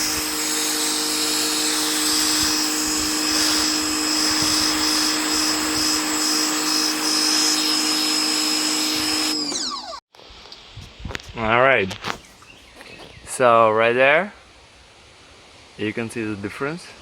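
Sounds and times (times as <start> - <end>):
pressure washer motor humming: 0.0 - 10.0.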